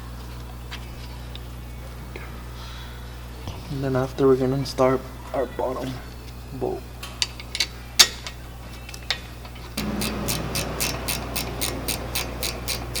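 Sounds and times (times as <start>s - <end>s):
ratchet wrench clicking: 9.8s - 13.0s.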